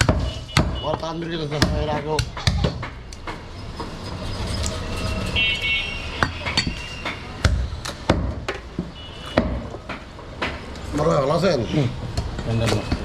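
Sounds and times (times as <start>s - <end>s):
cleaver chopping meat and bone: 0.0s - 3.4s, 6.2s - 10.7s
steady background noise: 0.0s - 13.0s.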